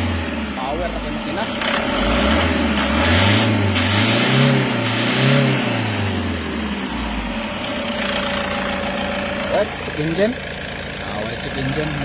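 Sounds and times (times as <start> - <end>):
diesel engine revving and idling: 0.0 - 12.0
man talking: 0.5 - 1.6, 9.4 - 12.0.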